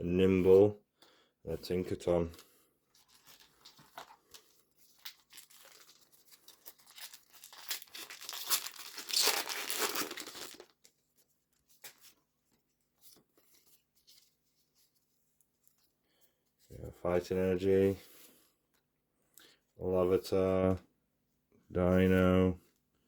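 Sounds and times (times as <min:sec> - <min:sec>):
cards rustling and clicking: 0:02.3 - 0:11.0
foil wrapper tearing and crinkling: 0:03.0 - 0:10.9.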